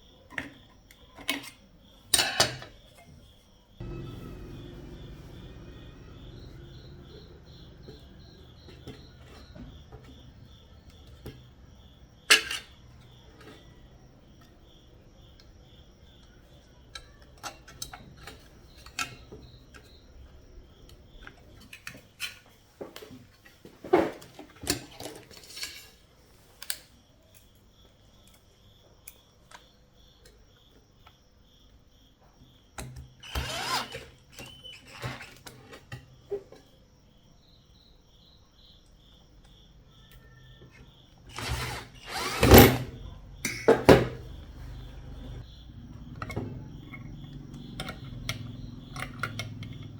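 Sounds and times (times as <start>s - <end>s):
crickets chirping: 0.0s - 49.9s
small tools clicking and knocking: 12.3s - 13.6s, 16.2s - 19.9s, 20.8s - 23.6s, 24.2s - 26.0s, 46.1s - 49.9s.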